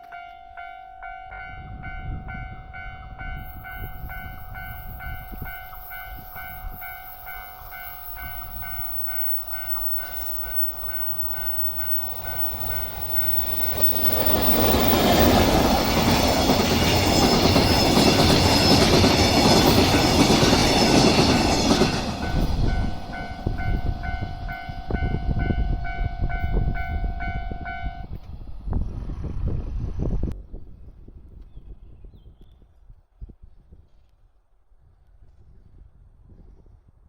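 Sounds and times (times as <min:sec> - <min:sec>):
level crossing warning bell: 0:00.0 - 0:28.1
steady tone: 0:00.0 - 0:28.1
train rumbling past: 0:00.0 - 0:30.4.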